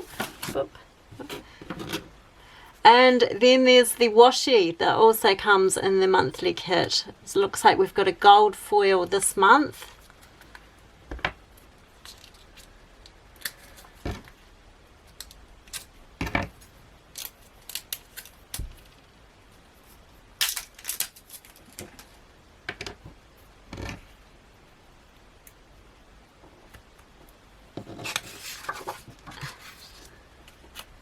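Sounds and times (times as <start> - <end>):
tape packaging clicks and rustles: 12.0 - 14.3, 15.0 - 19.1, 20.4 - 22.2.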